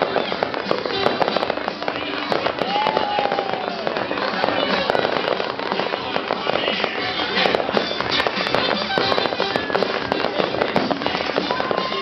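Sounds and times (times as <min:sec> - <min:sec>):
fireworks crackling and banging: 0:00.0 - 0:12.0
music playing: 0:00.0 - 0:12.0.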